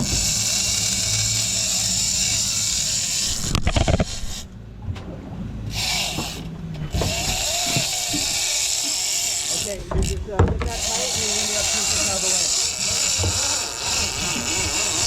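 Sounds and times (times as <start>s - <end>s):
mechanical whirr: 0.0s - 4.5s, 5.7s - 15.0s
boat engine running: 0.0s - 15.0s
knocks: 9.9s - 10.8s.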